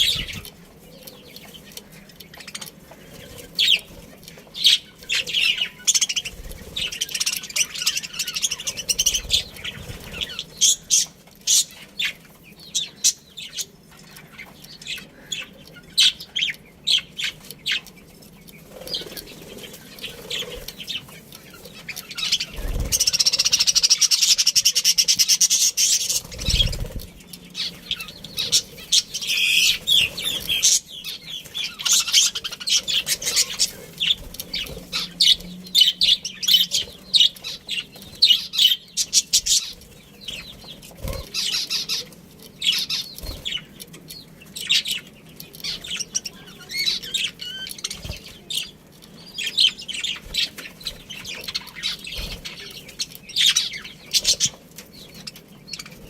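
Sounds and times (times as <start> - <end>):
budgerigars chirping: 0.0 - 56.0.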